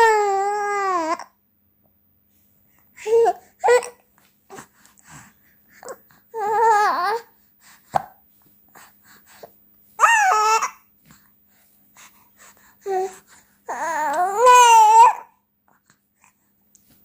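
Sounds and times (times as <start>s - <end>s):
baby cooing and babbling: 0.0s - 1.4s, 3.0s - 4.7s, 5.8s - 7.3s, 10.0s - 10.9s, 12.8s - 15.4s
baby breaths and mouth sounds: 2.3s - 6.3s, 10.9s - 13.7s.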